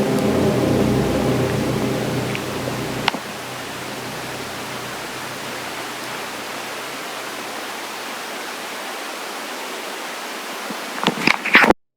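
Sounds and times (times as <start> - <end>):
steady rushing hiss: 0.0 - 9.0.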